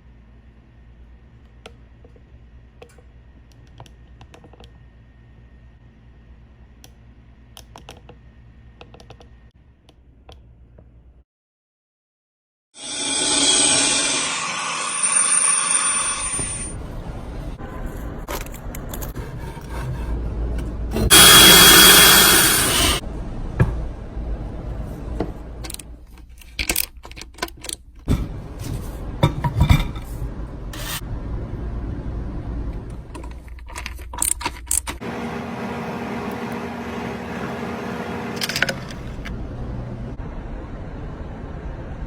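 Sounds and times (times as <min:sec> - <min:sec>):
loud rushing noise: 0:21.1 - 0:23.0.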